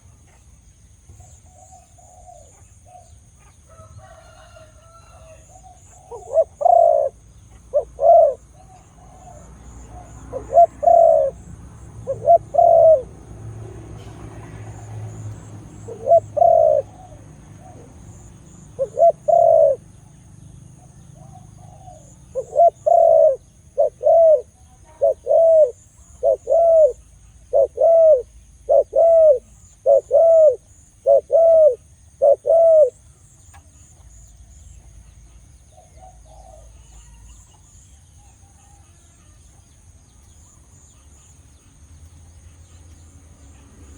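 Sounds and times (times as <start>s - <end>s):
dove cooing: 1.4s - 3.2s, 5.4s - 13.2s, 14.8s - 20.0s, 20.8s - 33.0s, 35.7s - 37.5s.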